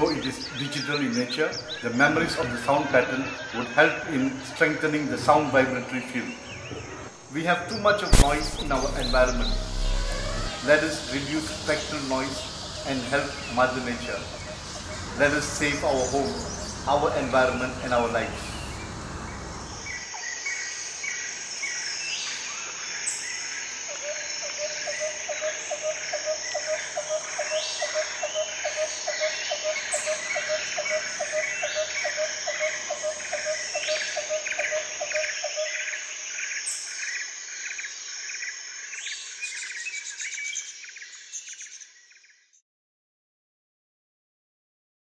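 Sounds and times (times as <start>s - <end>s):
high insect drone: 5.0s - 41.0s
bird chirps: 5.6s - 20.6s
low rapid repeating call: 8.2s - 18.0s.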